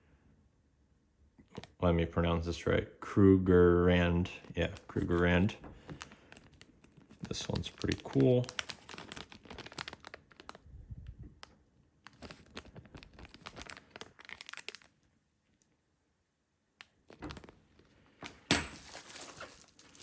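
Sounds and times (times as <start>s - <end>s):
packaging crinkling and rustling: 4.3s - 15.7s, 16.8s - 20.0s.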